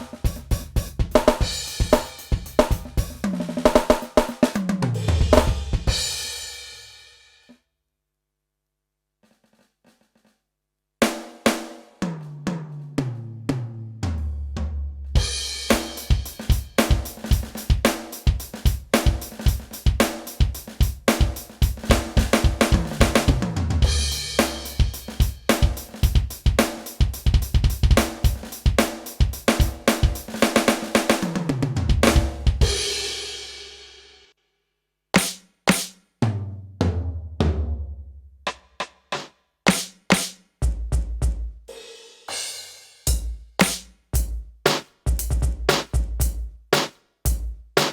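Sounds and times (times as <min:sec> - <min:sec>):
electronic drum kit groove: 0:00.0 - 0:06.4, 0:15.2 - 0:33.4, 0:35.2 - 0:36.0, 0:38.5 - 0:41.6, 0:42.3 - 0:47.9.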